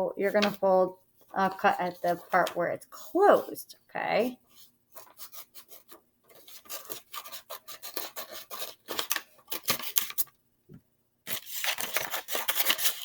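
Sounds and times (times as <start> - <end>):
paper being folded and creased: 0.3 - 0.7, 1.3 - 3.2, 4.5 - 10.3, 11.3 - 13.0
scissors snipping paper: 5.2 - 10.2, 11.3 - 13.0.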